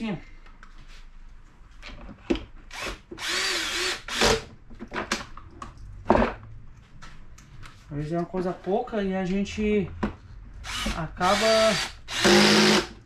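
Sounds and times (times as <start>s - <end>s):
electric screwdriver whining: 2.7s - 4.4s, 10.6s - 12.9s.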